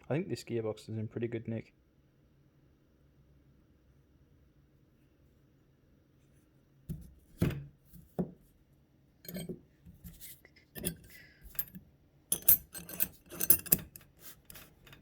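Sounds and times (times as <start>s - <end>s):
steel parts clinking on bench: 9.2s - 10.2s, 10.8s - 15.0s.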